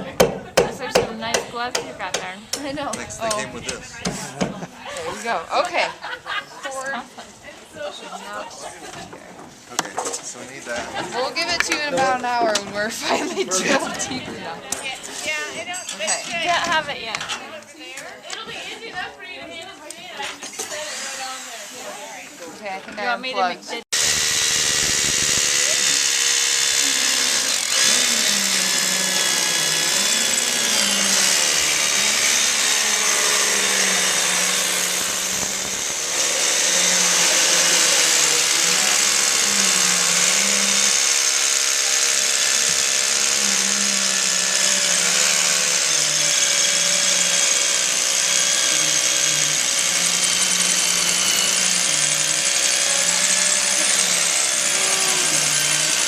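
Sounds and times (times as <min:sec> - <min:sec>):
electric drill boring into concrete: 0:20.5 - 0:22.3, 0:24.0 - 0:56.0.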